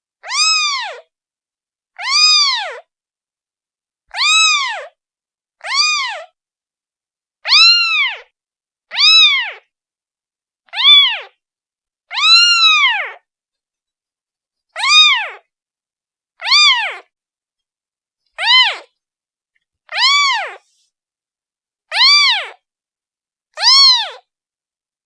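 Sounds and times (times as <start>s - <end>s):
kitten meowing: 0.2s - 1.1s, 2.0s - 2.8s, 4.1s - 5.0s, 5.6s - 6.4s, 7.4s - 8.3s, 8.9s - 9.7s, 10.7s - 11.4s, 12.1s - 13.2s, 14.8s - 15.5s, 16.4s - 17.1s, 18.4s - 18.9s, 19.9s - 20.8s, 21.9s - 22.6s, 23.6s - 24.3s.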